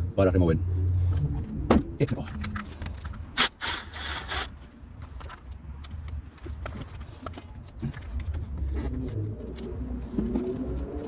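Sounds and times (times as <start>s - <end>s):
low rumble: 0.0s - 3.4s.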